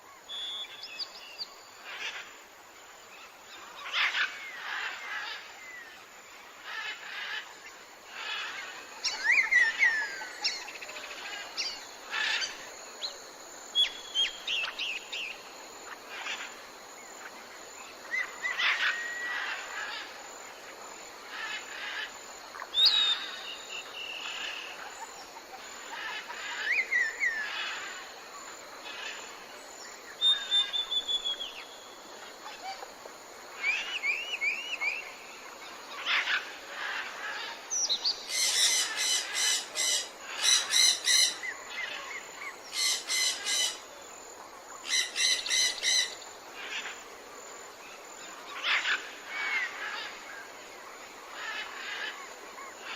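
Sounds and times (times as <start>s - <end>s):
background hiss: 0.0s - 52.9s
birds calling: 35.9s - 43.9s, 44.8s - 47.0s.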